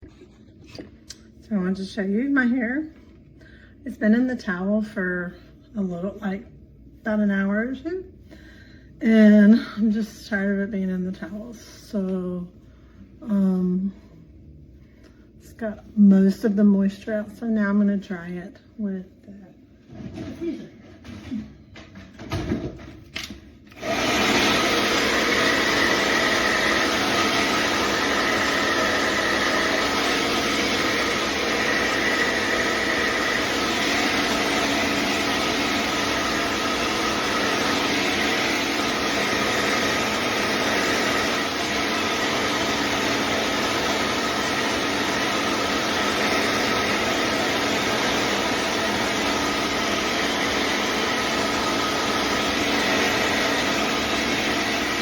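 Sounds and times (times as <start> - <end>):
hair dryer blowing: 23.2 - 55.0.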